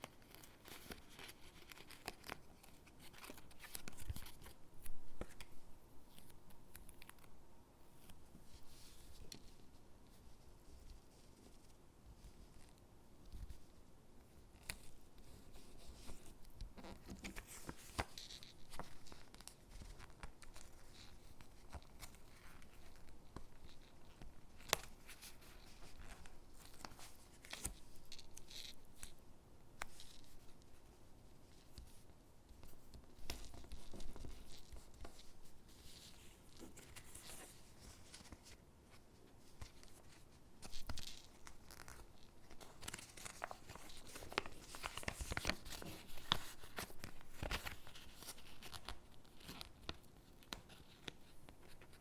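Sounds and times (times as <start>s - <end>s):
stickers peeling and paper rustling: 39.5s - 52.0s.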